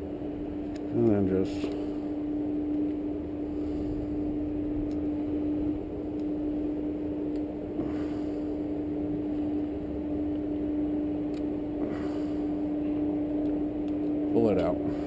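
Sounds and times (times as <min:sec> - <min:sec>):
low background rumble: 0:00.0 - 0:15.0
low machine hum: 0:00.0 - 0:15.0.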